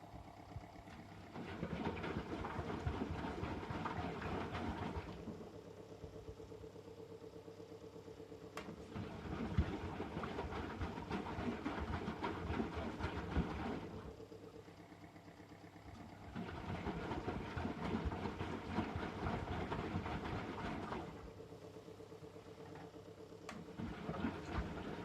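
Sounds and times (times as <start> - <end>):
water sloshing: 23.6 - 25.0.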